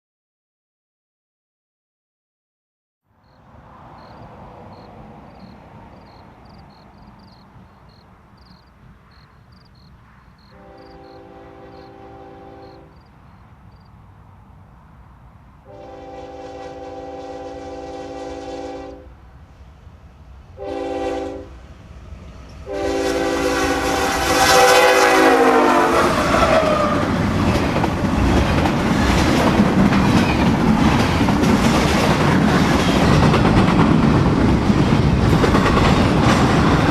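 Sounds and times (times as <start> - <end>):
train horn blasts: 10.5 - 13.0, 15.6 - 19.2, 20.6 - 21.6, 22.6 - 27.2
train wheels clacking on rails: 26.1 - 36.9.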